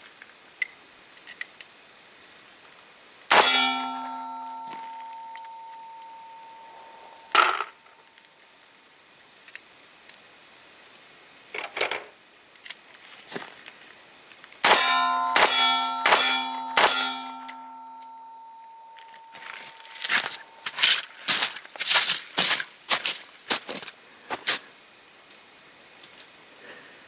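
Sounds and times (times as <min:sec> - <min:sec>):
loud ringing metal clangs: 0:03.3 - 0:07.8, 0:14.6 - 0:20.8.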